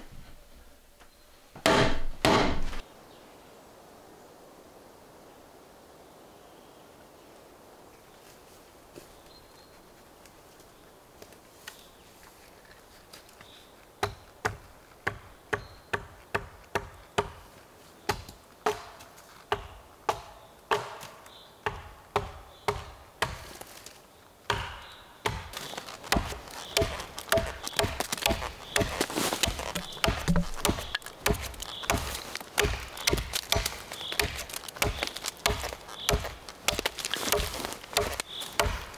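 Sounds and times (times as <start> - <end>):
sharp knocks: 1.6 - 2.8, 26.1 - 38.9.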